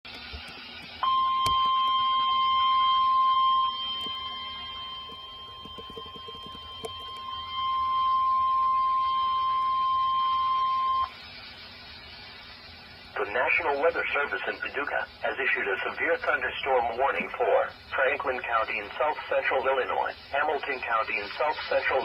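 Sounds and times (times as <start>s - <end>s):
steady high alarm tone: 1.0s - 20.6s
radio hiss: 10.3s - 22.0s.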